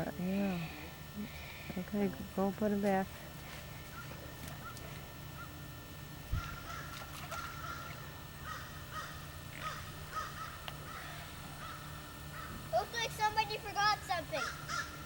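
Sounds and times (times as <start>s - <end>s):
steady low hum: 0.0s - 15.0s
birds calling: 3.3s - 15.0s.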